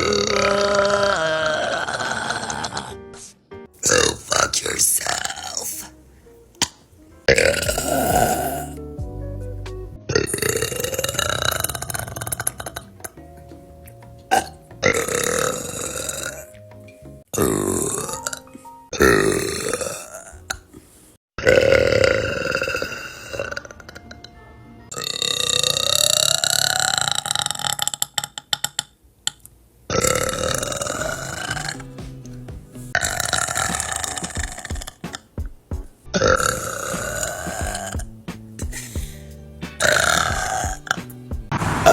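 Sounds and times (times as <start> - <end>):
women burping loudly: 0.0 - 3.0, 3.8 - 5.6, 7.3 - 8.8, 10.1 - 13.0, 14.3 - 16.6, 17.4 - 18.4, 19.0 - 20.6, 29.9 - 31.8, 33.0 - 35.0, 36.2 - 38.0, 39.8 - 40.9.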